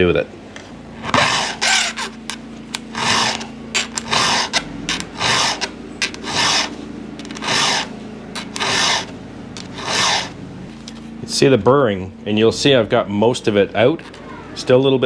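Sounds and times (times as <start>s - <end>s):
file rasping on chainsaw chain: 1.1s - 2.2s, 2.9s - 6.7s, 7.3s - 10.4s.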